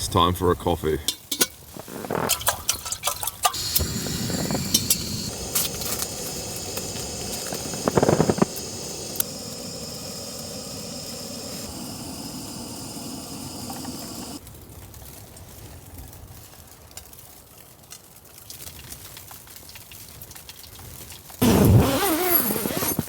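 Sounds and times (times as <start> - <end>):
gas stove hissing: 3.4 - 14.4, 21.4 - 23.0.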